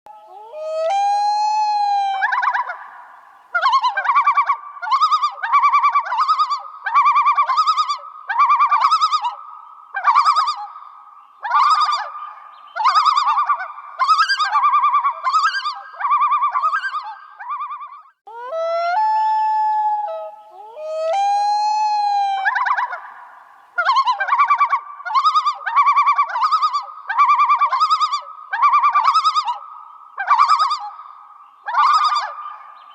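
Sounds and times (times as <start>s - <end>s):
bird calling: 0.1s - 32.9s.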